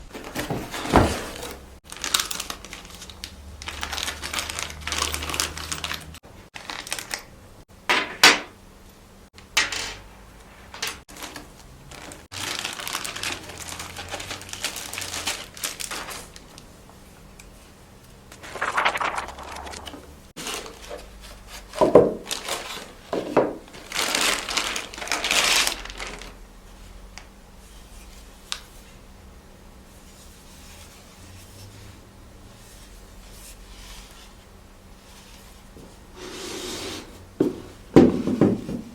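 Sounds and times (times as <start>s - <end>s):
packaging rustling and crinkling: 0.1s - 7.3s, 10.7s - 16.7s, 18.3s - 26.4s.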